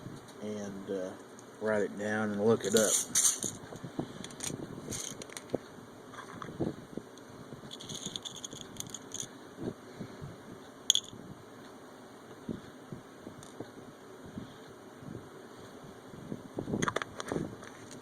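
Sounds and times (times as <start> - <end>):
small parts clicking and rustling: 2.6 - 6.6, 7.7 - 9.3, 10.9 - 11.2.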